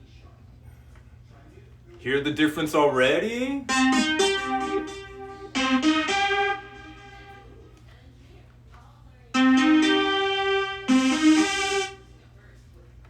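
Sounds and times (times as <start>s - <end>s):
synthesizer phrases: 2.8s - 7.4s, 9.4s - 12.1s.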